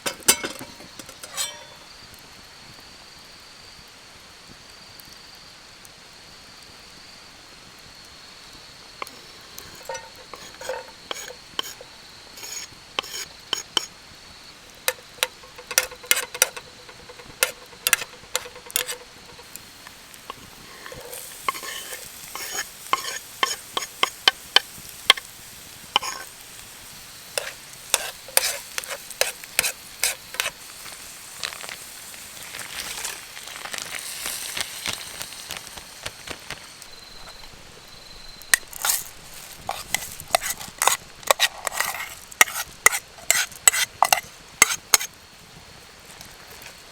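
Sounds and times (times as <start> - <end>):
utensil scraping pan: 0.0 - 1.9, 9.0 - 13.9, 14.9 - 31.8, 38.5 - 45.1
food sizzling in frying pan: 0.0 - 2.9, 6.4 - 46.9.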